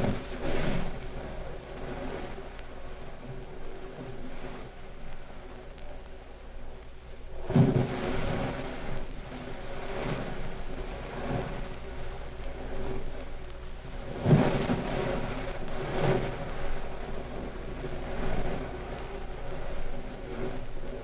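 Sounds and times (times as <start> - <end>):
steady rain: 0.0 - 21.0
thunder rumbling: 7.2 - 21.0.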